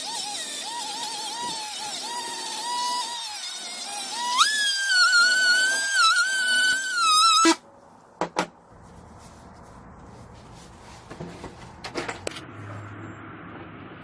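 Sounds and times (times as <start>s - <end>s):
power tool motor whining: 0.0s - 7.6s.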